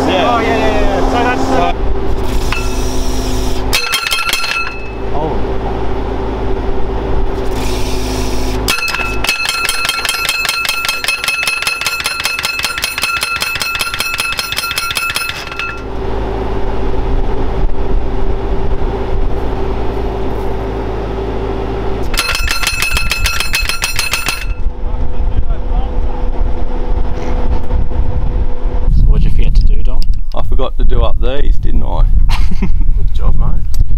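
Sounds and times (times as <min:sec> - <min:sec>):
skid steer engine running: 0:00.0 - 0:28.8
post driver metallic blows: 0:02.2 - 0:05.1, 0:07.4 - 0:15.9, 0:22.0 - 0:24.7.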